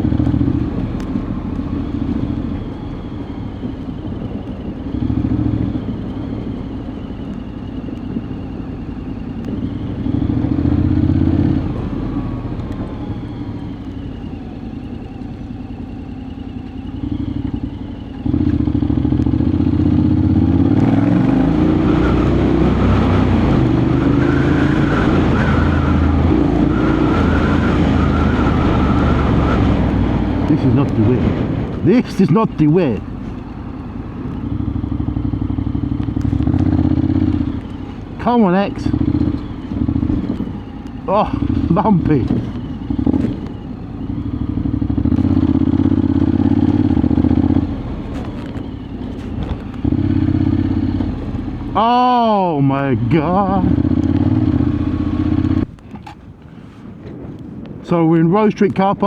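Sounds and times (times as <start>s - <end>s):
motorcycle engine at low speed: 0.0s - 59.0s.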